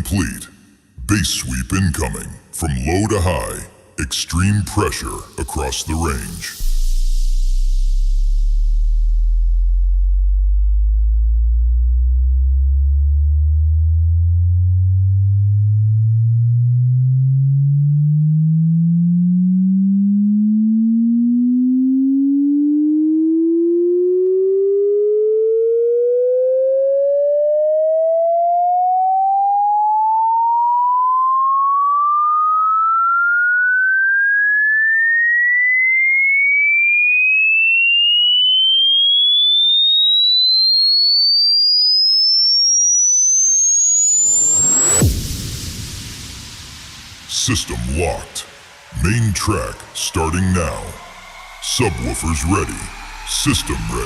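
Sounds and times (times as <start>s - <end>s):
rising sine tone sweep: 6.5s - 29.4s, 38.1s - 47.3s, 51.0s - 52.0s.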